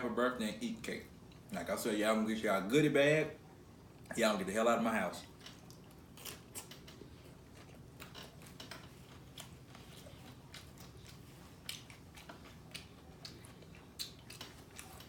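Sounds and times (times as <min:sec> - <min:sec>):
low background hum: 0:00.0 - 0:15.0
chewing with wet mouth clicks: 0:05.2 - 0:15.0.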